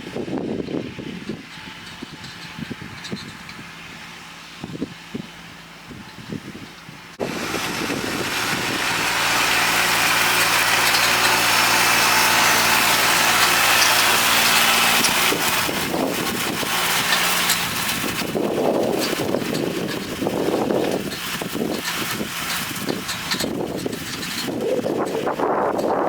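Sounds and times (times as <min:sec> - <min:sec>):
tractor diesel engine running: 0:00.0 - 0:26.0
hay tedder hissing: 0:07.2 - 0:26.0.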